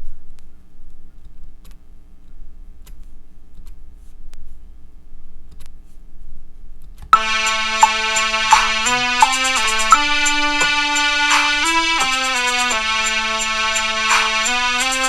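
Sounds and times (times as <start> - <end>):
low hum: 7.2 - 15.0
synthesizer chord with a beat: 7.2 - 15.0.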